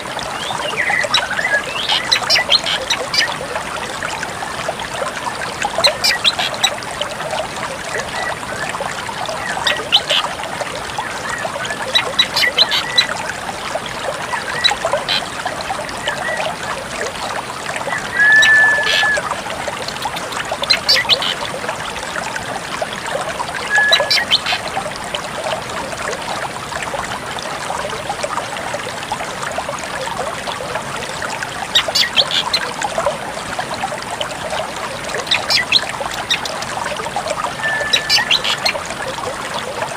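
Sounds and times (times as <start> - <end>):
running water trickle: 0.0 - 39.9
bird whistle: 17.9 - 19.2, 23.7 - 24.3, 37.6 - 38.6
bird calling short high notes: 17.9 - 19.3, 37.6 - 38.4.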